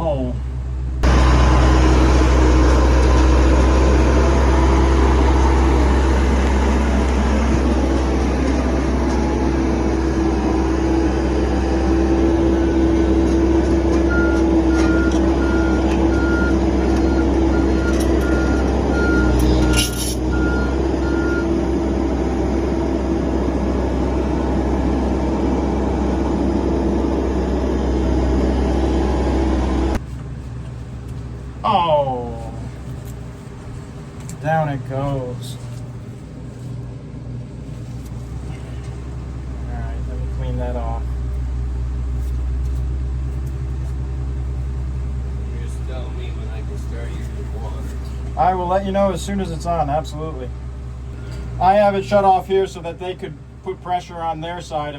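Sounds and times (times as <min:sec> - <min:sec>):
earth-moving machine engine running: 0:00.0 - 0:54.9
reverse alarm beeping: 0:14.1 - 0:21.6.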